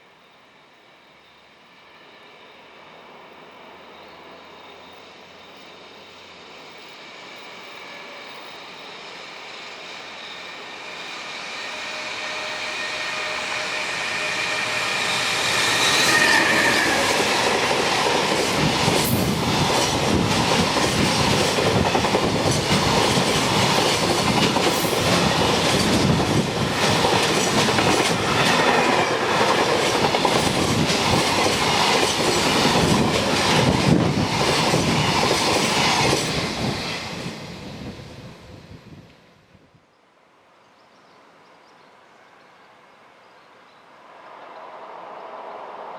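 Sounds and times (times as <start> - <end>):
freight train passing: 0.0 - 39.8, 41.2 - 45.9
train wheel clatter: 10.9 - 37.1.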